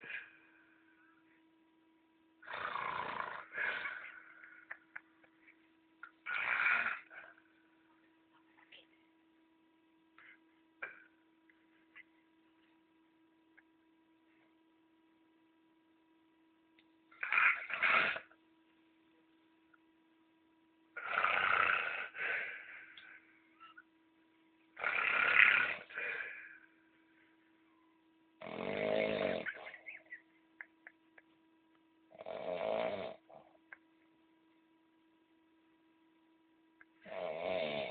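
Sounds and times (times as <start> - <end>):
man snoring loudly: 2.4 - 4.1, 6.2 - 7.3, 17.2 - 18.3, 21.0 - 22.4, 24.8 - 26.3, 28.4 - 29.6, 32.1 - 33.3, 37.0 - 37.9.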